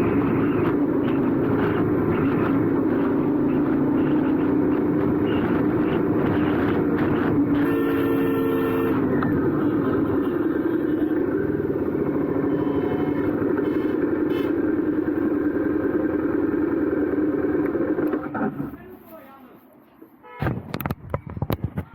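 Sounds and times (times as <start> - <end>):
motorcycle engine running: 0.0 - 18.3
motorcycle horn: 3.4 - 14.7, 20.2 - 20.6.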